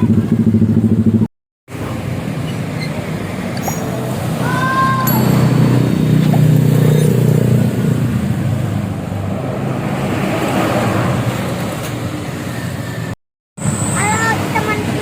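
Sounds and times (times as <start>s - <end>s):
tyre and traffic noise: 0.0s - 15.0s
vehicle engine drone: 0.0s - 15.0s.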